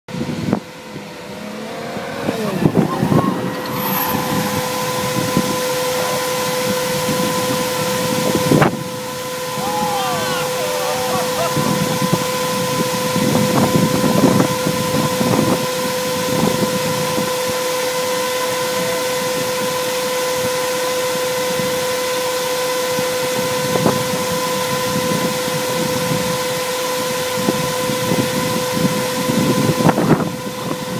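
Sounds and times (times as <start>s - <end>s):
car engine: 0.0s - 19.6s
low buffeting gusts: 0.1s - 20.5s
steady high-pitched whine: 0.1s - 30.9s.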